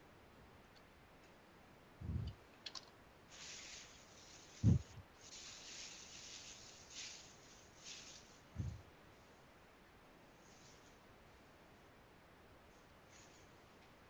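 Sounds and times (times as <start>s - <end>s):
soft hiss: 0.6s - 14.0s
computer keyboard clicks: 2.6s - 3.0s.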